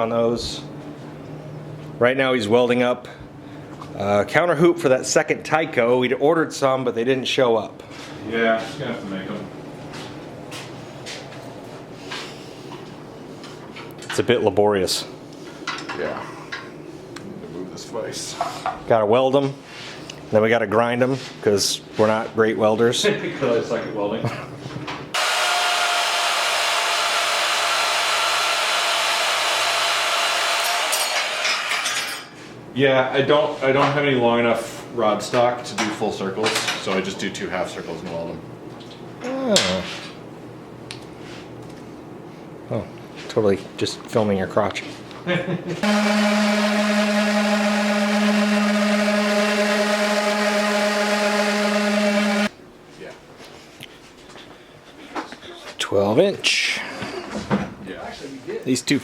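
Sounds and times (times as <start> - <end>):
power tool motor running: 25.2 - 31.5, 45.8 - 52.5.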